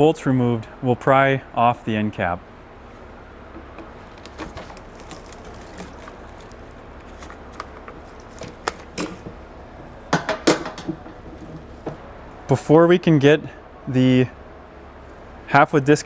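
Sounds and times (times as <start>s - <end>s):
prying tool clicks and knocks: 10.0s - 12.0s.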